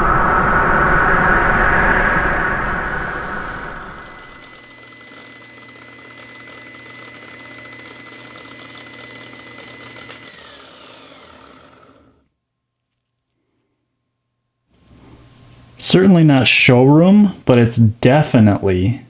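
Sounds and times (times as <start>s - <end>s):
electric buffing tool whining: 2.5s - 12.3s.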